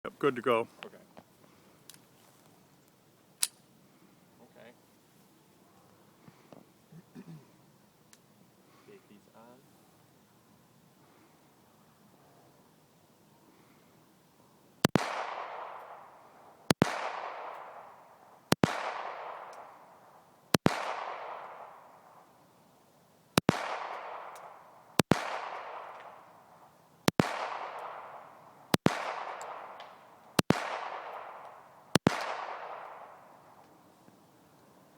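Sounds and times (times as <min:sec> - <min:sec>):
pistol shots with echo: 0:14.8 - 0:22.3, 0:23.4 - 0:33.6.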